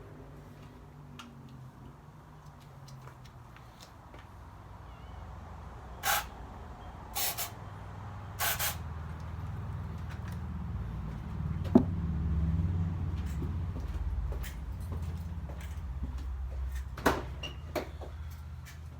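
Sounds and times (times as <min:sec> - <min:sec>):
spray hissing: 0:06.0 - 0:06.4, 0:07.2 - 0:07.6, 0:08.4 - 0:08.9.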